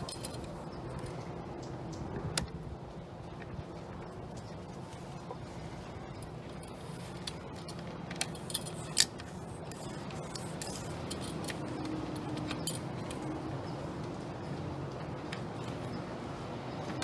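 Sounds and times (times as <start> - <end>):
steady low hum: 0.0 - 17.0
bicycle chain clicking: 6.2 - 13.7.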